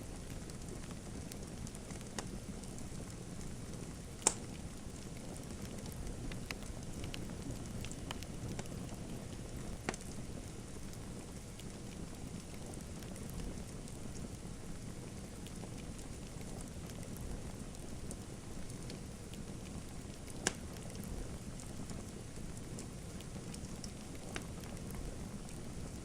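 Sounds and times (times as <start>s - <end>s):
wood fire crackling: 0.0s - 26.0s
sharp pops from fire: 0.3s - 2.8s, 4.1s - 9.0s, 9.6s - 10.2s, 20.1s - 21.2s, 23.5s - 25.1s.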